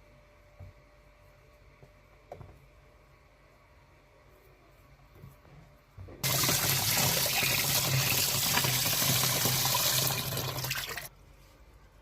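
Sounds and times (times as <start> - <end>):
water rushing in washing machine: 6.2 - 11.1.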